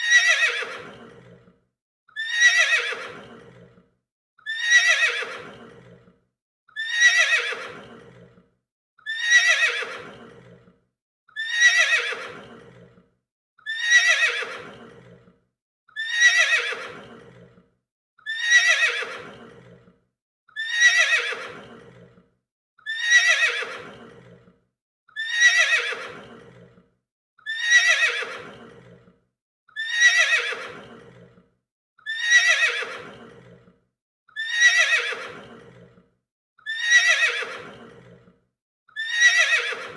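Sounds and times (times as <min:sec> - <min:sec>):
horse neighing: 0:00.0 - 0:01.5, 0:02.2 - 0:03.7, 0:04.5 - 0:06.1, 0:06.8 - 0:08.3, 0:09.1 - 0:10.7, 0:11.4 - 0:12.9, 0:13.7 - 0:15.2, 0:16.0 - 0:17.5, 0:18.3 - 0:19.8, 0:20.6 - 0:22.1, 0:22.9 - 0:24.4, 0:25.2 - 0:26.7, 0:27.5 - 0:29.0, 0:29.8 - 0:31.3, 0:32.1 - 0:33.6, 0:34.4 - 0:35.8, 0:36.7 - 0:38.2, 0:39.0 - 0:39.9.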